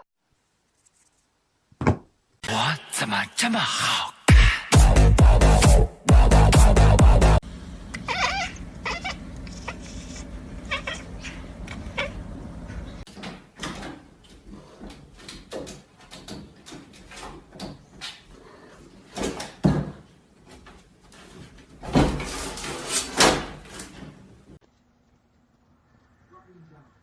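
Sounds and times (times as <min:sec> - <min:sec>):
cat meowing: 0:07.9 - 0:12.2.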